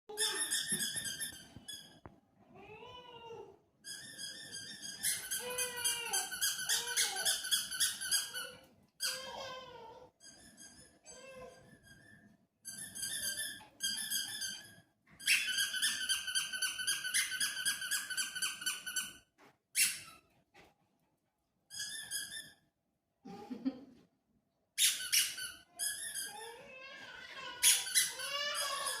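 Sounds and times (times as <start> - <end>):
squeaky dog toy squeezed: 0.1 - 2.0, 3.8 - 9.6, 10.2 - 20.3, 21.7 - 22.7, 24.8 - 26.6, 27.4 - 29.0.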